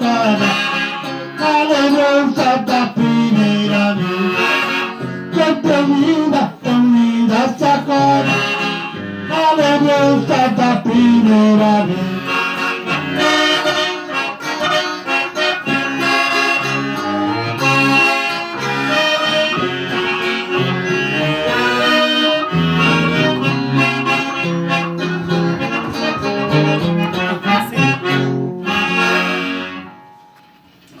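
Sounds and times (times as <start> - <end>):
accordion playing: 0.0 - 30.6
guitar accompaniment: 0.0 - 31.0.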